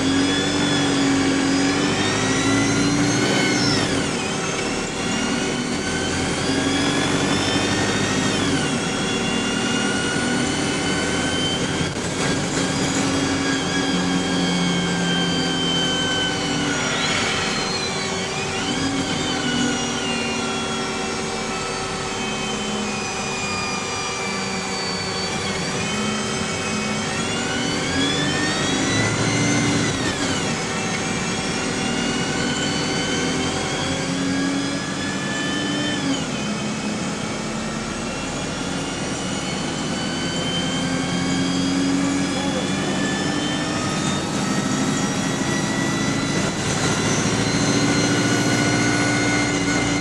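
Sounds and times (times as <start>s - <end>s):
bus engine running: 0.0s - 35.3s
gearbox whine: 0.0s - 50.0s.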